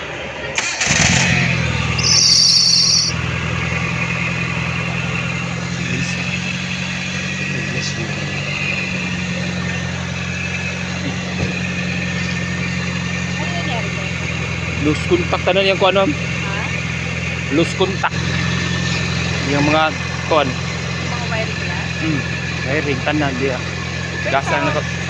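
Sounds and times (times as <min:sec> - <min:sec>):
car engine idling: 0:00.6 - 0:25.0
loud high-pitched tone: 0:02.0 - 0:03.1.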